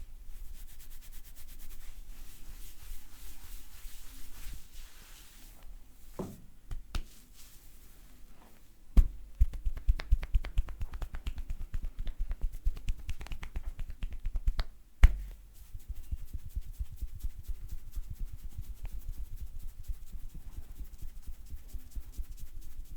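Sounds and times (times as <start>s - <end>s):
hand slaps and taps: 6.2s - 7.2s, 9.0s - 15.5s.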